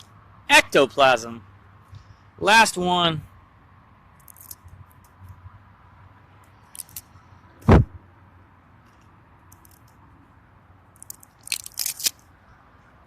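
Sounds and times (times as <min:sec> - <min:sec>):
loud thump: 0:07.6 - 0:08.0.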